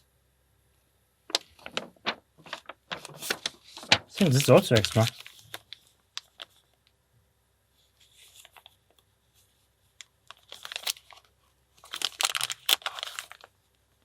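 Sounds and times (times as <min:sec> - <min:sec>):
plastic packaging crinkling and tearing: 0:01.3 - 0:06.8, 0:10.0 - 0:13.6.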